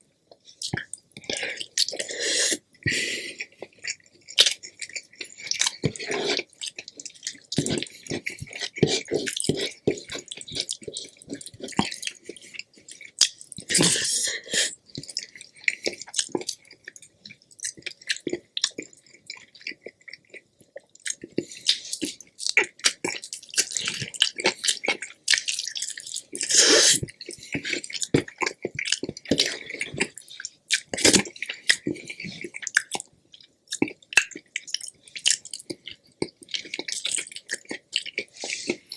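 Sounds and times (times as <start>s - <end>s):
wet chewing and mouth clicks: 0.3s - 38.9s.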